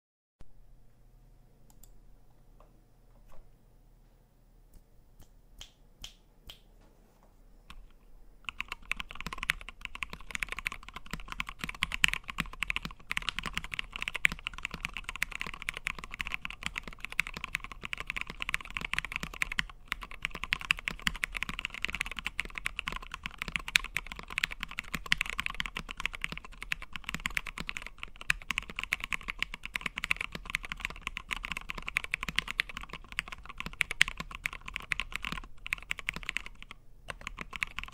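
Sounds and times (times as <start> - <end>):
typing on mechanical keyboard: 7.7 - 37.9.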